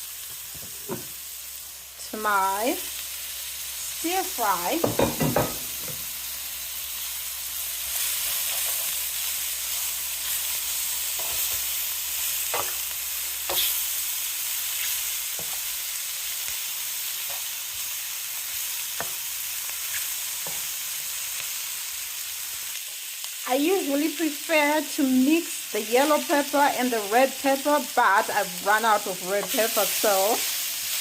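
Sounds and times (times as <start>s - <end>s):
vegetables sizzling in oil: 0.0s - 31.0s
utensil knocking against pan: 4.8s - 5.6s.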